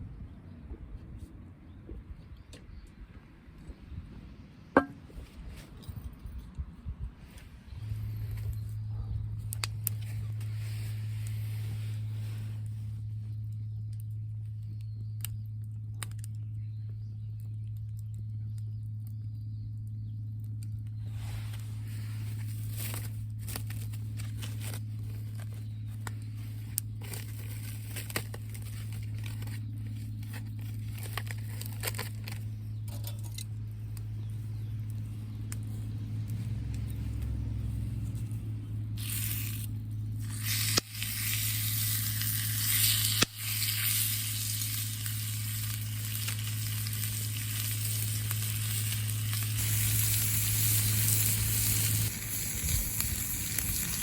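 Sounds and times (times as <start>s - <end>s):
steady low hum: 0.0s - 54.0s
small clicks and crackles: 9.4s - 54.0s
food frying and sizzling: 40.2s - 54.0s.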